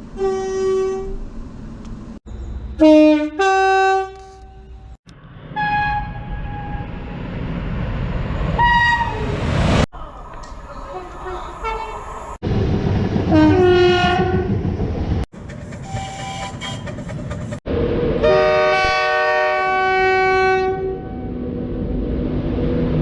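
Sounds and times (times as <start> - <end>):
rumble of trains running: 0.0 - 23.0
train horns: 0.2 - 1.2, 2.8 - 5.0, 5.6 - 7.0, 8.6 - 9.3, 13.3 - 14.5, 15.8 - 16.9, 18.2 - 21.4.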